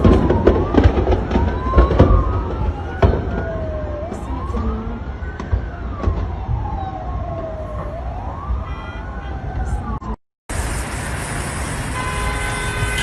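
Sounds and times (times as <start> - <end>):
explosion bangs: 0.0 - 3.8
siren wailing: 0.0 - 10.2.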